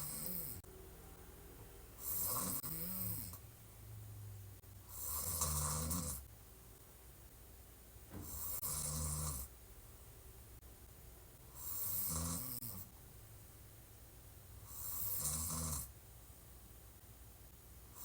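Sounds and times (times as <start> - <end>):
woman snoring: 0.0 - 0.6, 2.0 - 3.4, 4.9 - 6.3, 8.2 - 9.5, 11.6 - 12.9, 14.7 - 15.9.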